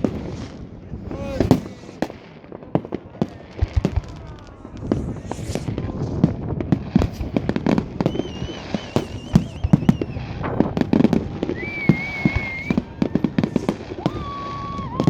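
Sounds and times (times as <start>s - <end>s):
fireworks bangs and crackles: 0.0s - 15.0s
wavering firework whistles: 3.2s - 15.0s.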